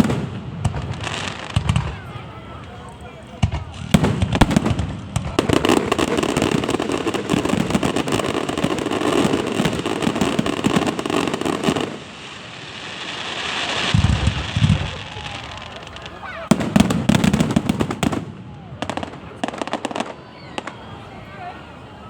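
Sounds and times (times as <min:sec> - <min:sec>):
fireworks crackling: 0:00.0 - 0:20.8
fireworks hiss: 0:03.5 - 0:18.1.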